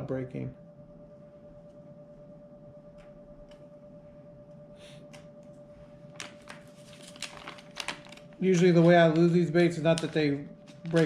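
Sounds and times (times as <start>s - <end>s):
faint high hum: 0.0s - 11.0s
plastic packaging rustle: 6.0s - 11.0s.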